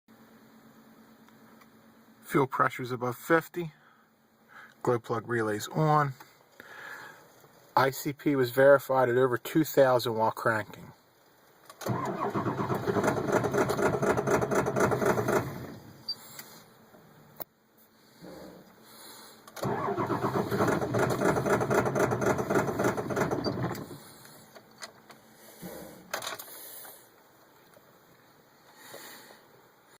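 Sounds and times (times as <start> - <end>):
diesel engine cranking: 11.7 - 16.5, 19.5 - 24.8.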